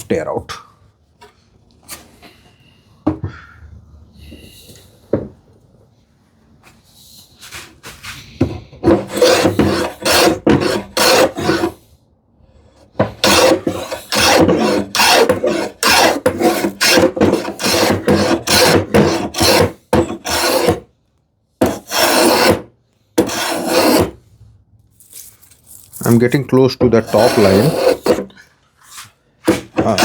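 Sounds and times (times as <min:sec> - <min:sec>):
plane rasping across wood: 0:08.8 - 0:11.8, 0:13.0 - 0:20.8, 0:21.6 - 0:24.2, 0:27.0 - 0:28.3, 0:29.5 - 0:30.0.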